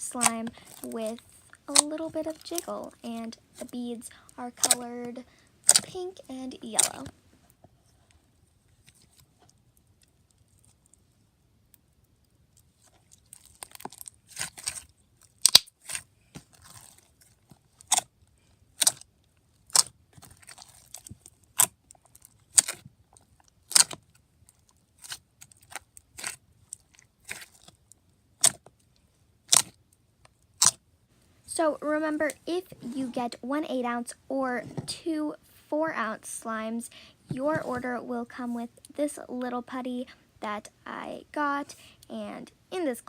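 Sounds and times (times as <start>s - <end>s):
slime squished by hand: 5.6s - 5.9s, 12.8s - 18.1s, 18.8s - 22.8s, 23.6s - 24.1s, 29.4s - 29.8s.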